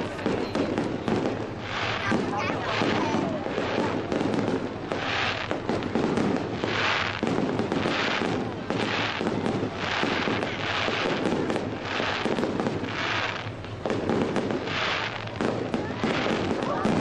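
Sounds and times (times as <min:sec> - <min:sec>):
crackling hiss: 0:00.0 - 0:17.0
fireworks bangs and crackles: 0:00.0 - 0:17.0.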